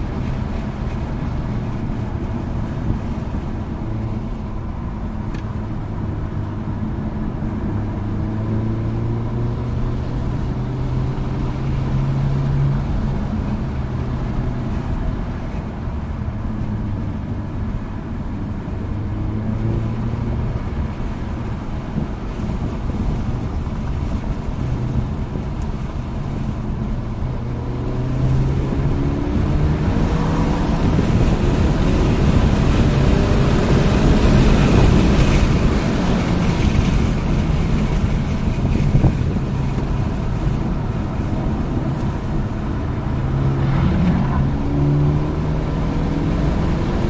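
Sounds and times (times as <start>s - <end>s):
car engine running hard: 0.0s - 47.0s
wind noise: 18.2s - 47.0s.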